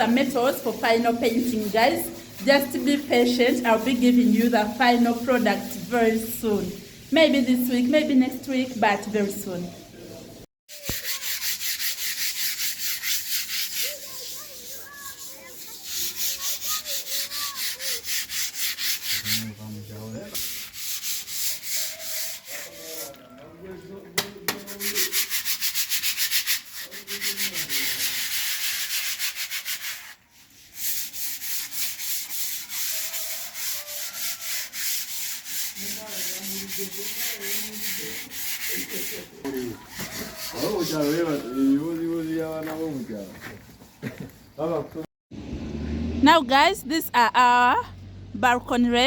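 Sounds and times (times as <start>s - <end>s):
sandpaper rasping on wall: 0.0s - 7.8s, 10.7s - 23.2s, 24.5s - 44.1s.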